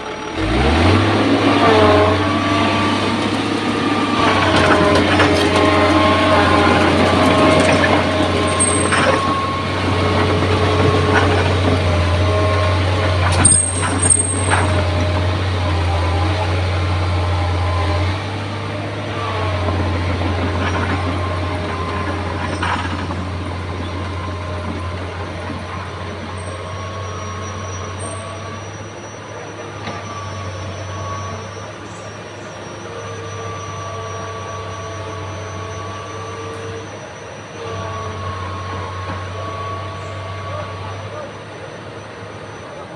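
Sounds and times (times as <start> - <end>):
diesel engine low rumble: 0.0 - 42.9
high squealing tones: 3.8 - 15.5
sharp metal clank: 13.4 - 14.8.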